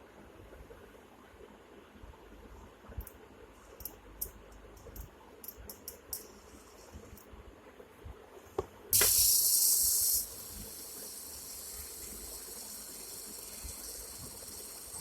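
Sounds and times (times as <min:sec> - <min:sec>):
high-pitched hiss: 0:09.0 - 0:15.0.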